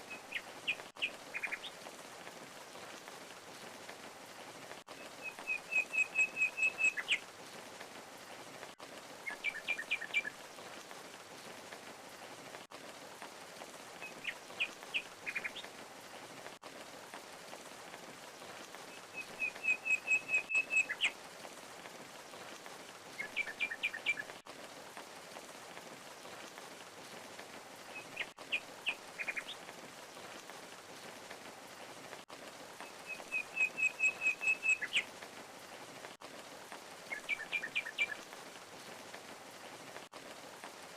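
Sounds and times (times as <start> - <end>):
songbird chirping: 0.0 - 1.9, 5.0 - 7.3, 9.2 - 10.8, 14.0 - 15.7, 18.3 - 21.2, 22.3 - 24.4, 32.8 - 35.2, 37.0 - 39.2.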